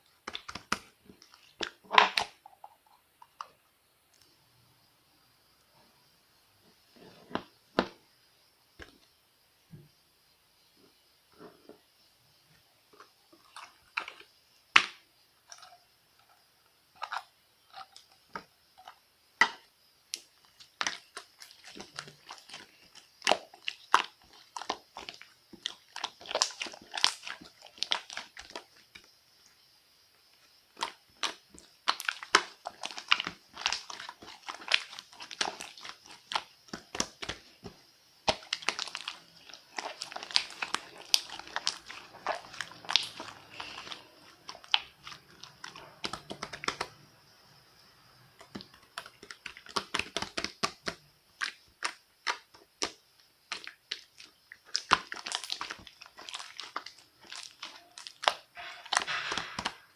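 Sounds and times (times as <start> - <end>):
crunchy chewing: 17.0 - 19.0, 20.2 - 29.1, 30.7 - 47.6, 48.2 - 59.9.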